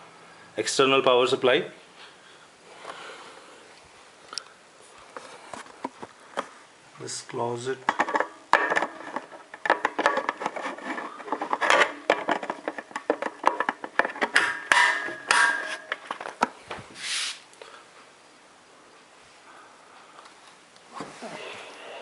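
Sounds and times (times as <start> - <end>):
brief rubbing: 17.0 - 17.4.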